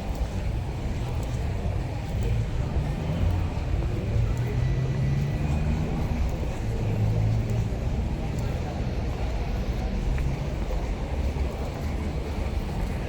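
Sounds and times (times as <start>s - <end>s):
street traffic rumble: 0.0s - 13.0s.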